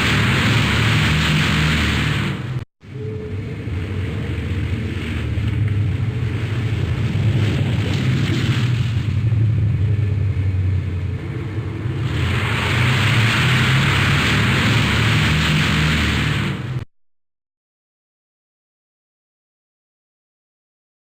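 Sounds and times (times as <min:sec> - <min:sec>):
loud rushing hiss: 0:00.0 - 0:02.6, 0:12.0 - 0:16.8
low airplane engine rumble: 0:00.0 - 0:16.9.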